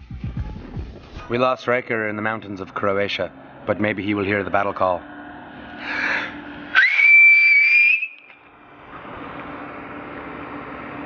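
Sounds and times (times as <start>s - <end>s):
breathy rush: 5.0s - 7.9s
person whistling a call: 6.8s - 8.3s.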